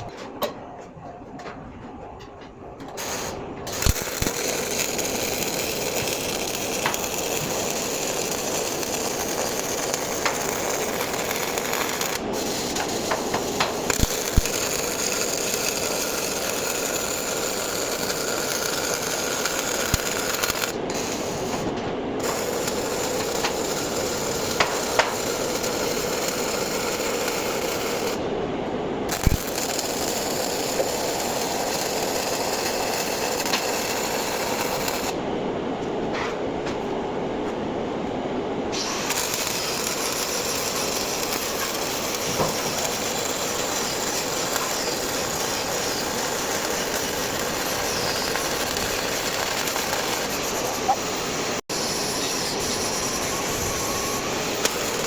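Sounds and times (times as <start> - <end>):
welding arc crackling: 2.9 - 28.2, 29.0 - 35.2, 38.7 - 55.0.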